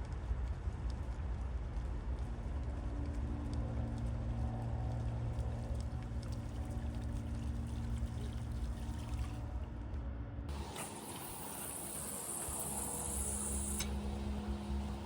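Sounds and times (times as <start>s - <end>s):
low motor hum: 3.3s - 15.0s.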